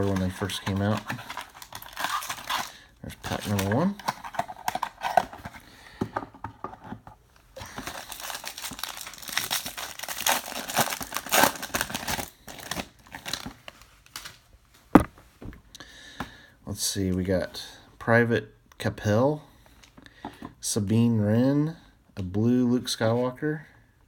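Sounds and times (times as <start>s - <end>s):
wrapper tearing and crinkling: 0.0s - 5.4s, 7.6s - 14.4s.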